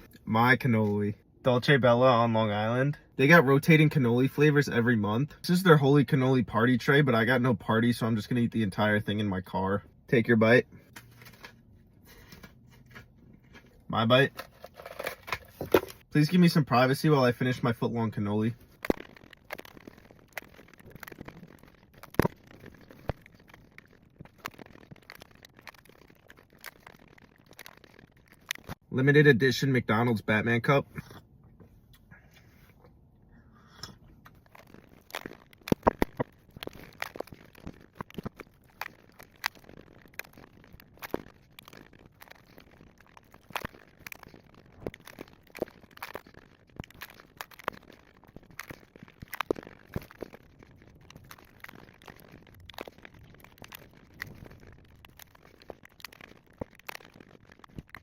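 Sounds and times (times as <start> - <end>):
crunching fried pastry shell: 17.1 - 28.8, 34.3 - 58.0.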